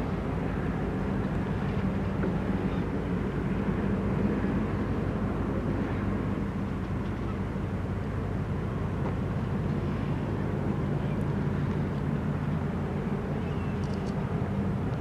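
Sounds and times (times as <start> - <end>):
ship engines droning: 0.0 - 15.0.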